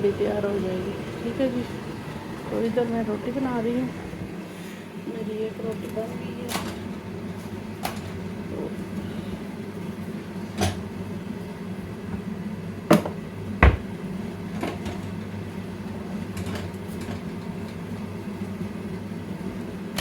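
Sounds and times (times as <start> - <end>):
steady low hum: 0.0 - 20.0
dough and utensils knocking on board: 12.9 - 13.9
heavy thump: 13.0 - 13.9.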